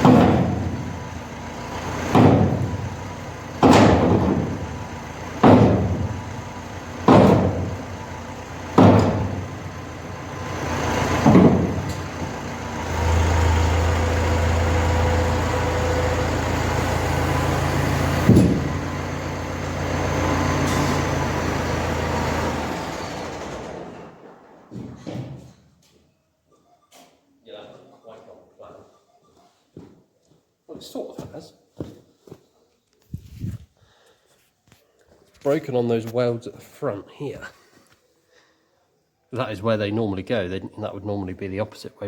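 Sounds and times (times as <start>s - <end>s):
heavy metal clangs: 0.0s - 12.5s, 18.1s - 21.4s
tractor engine running: 0.0s - 25.0s.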